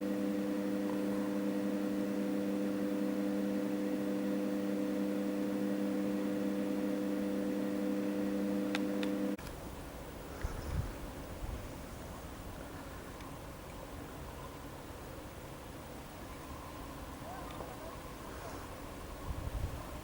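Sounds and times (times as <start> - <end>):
steady machine hum: 0.0 - 20.0
faint ticks: 8.7 - 9.6.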